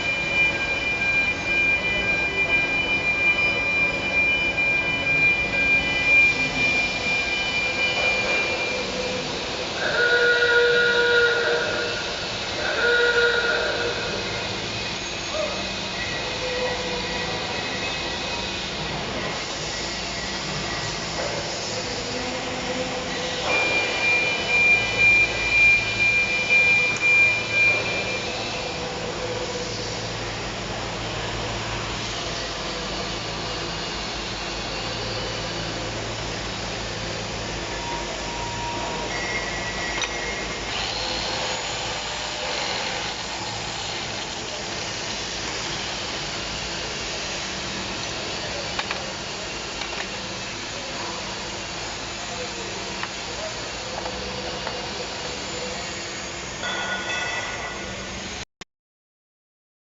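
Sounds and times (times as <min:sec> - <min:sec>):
high whine: 0:00.0 - 0:58.4
welding arc hissing: 0:08.1 - 0:56.5.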